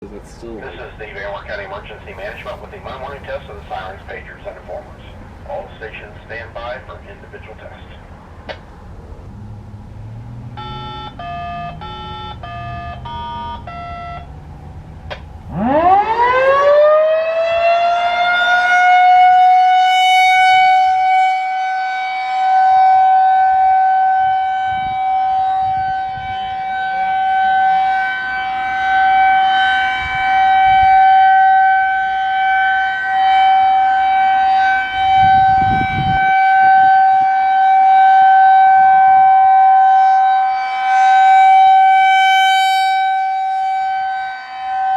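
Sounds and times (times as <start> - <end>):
rotating siren wailing: 10.1 - 44.9
short electronic activation tones: 10.6 - 14.3.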